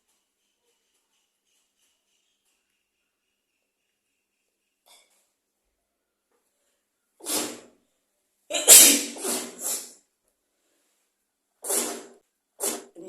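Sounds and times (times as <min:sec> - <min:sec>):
person sneezing: 0:08.5 - 0:10.0.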